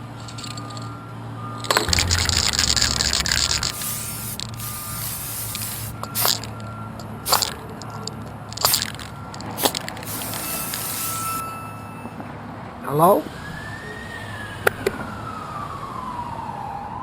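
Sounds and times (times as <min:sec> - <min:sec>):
spray paint cans hissing: 0:01.7 - 0:11.4.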